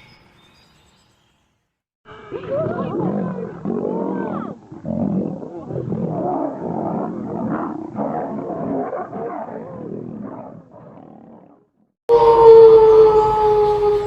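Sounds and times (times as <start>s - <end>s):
lion roaring and grunting: 2.3s - 11.6s.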